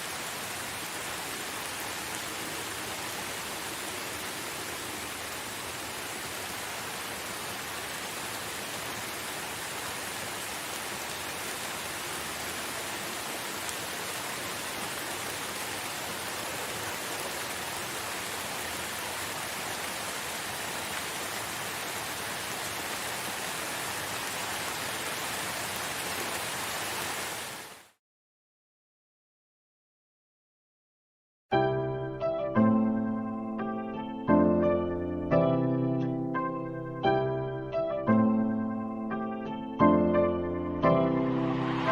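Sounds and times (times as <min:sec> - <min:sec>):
steady rain hiss: 0:00.0 - 0:28.0, 0:39.8 - 0:41.9.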